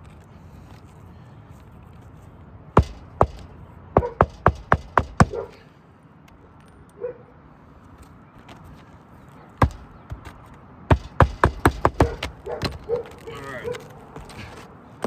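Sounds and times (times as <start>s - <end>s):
hammer driving roofing nails: 2.8s - 5.6s, 9.6s - 15.0s.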